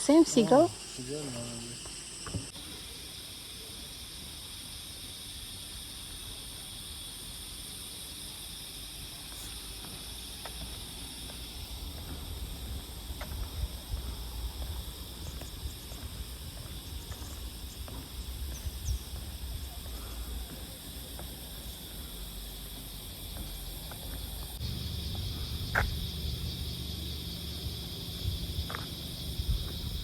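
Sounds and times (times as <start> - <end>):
insects droning: 0.0 - 30.0
low rumble of wind: 9.2 - 30.0.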